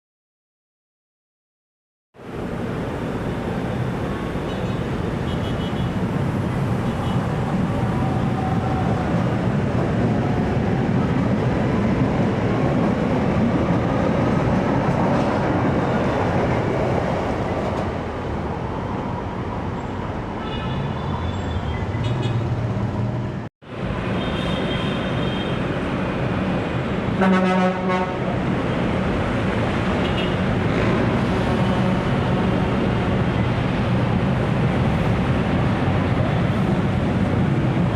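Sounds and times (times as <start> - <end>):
light rail train rumbling: 2.2 - 37.9
train horn blast: 27.2 - 28.4.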